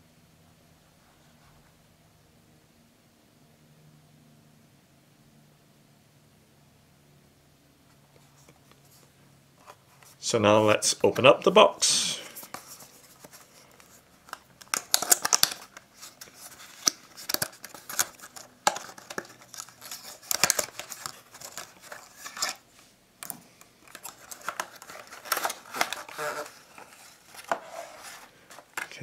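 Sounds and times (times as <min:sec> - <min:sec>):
cardboard box scraping and rustling: 0:24.2 - 0:28.7.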